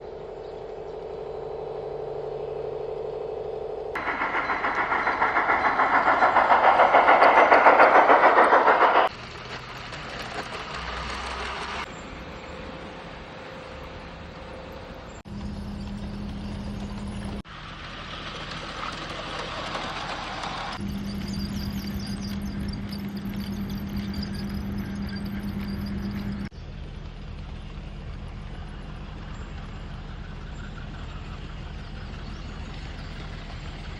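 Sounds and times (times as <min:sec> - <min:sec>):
model train rhythmic rush: 0:04.0 - 0:13.0, 0:15.4 - 0:33.9
model train motor hum: 0:15.4 - 0:26.4.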